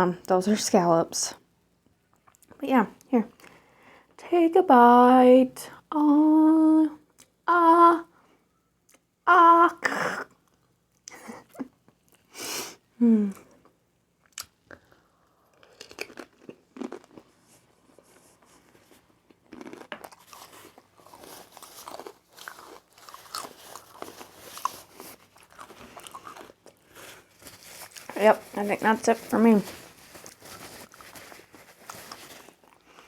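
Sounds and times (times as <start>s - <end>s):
person chewing and crunching: 14.2s - 28.6s, 29.6s - 33.0s.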